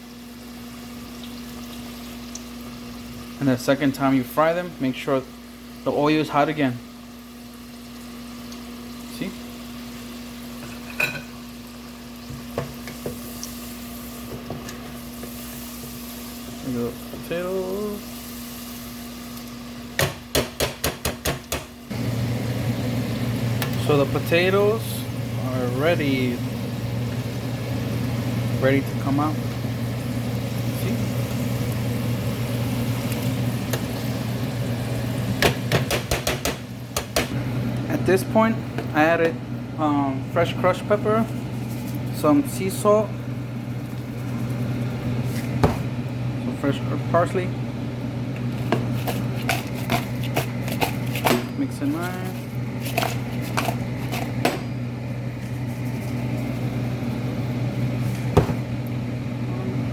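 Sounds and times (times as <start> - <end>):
low hum of kitchen equipment: 0.0 - 59.9.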